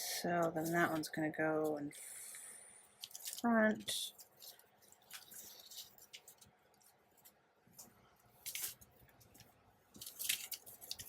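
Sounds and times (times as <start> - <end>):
paper rustling and scraping: 4.2 - 11.0.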